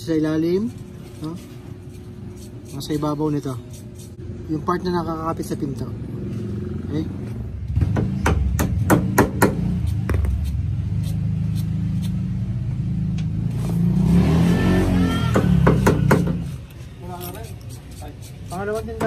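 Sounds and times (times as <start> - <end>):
vehicle engine droning: 4.2 - 16.8
vehicle engine revving: 5.8 - 16.6.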